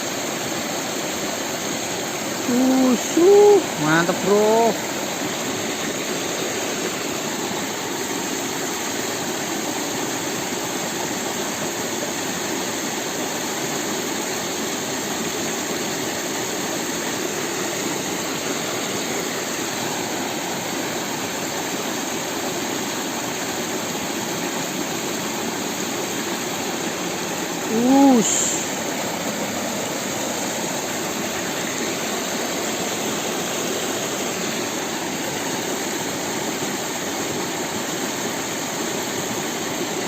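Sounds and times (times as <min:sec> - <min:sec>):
river water rushing: 0:00.0 - 0:40.0.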